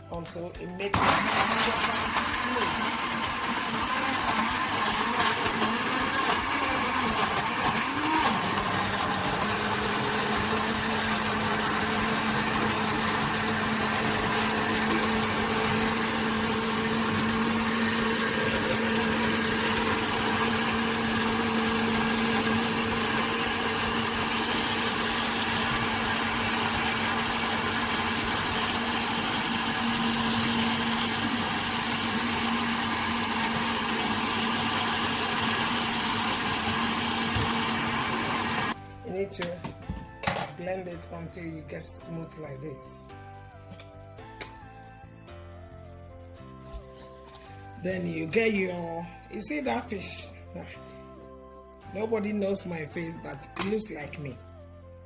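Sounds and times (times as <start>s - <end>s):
electric blender running: 0.9s - 38.9s.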